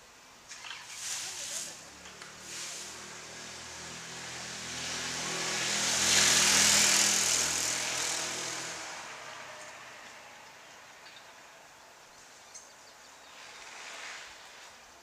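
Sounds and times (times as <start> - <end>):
car driving past: 1.9 - 10.7.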